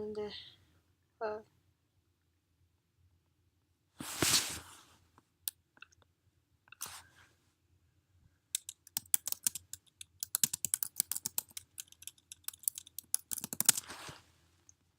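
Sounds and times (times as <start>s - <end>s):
keyboard typing clicks: 8.6s - 13.9s.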